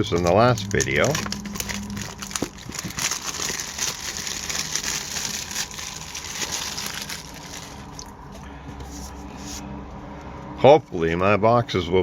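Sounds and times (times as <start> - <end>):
plastic wrapping crinkling: 0.0 - 8.5.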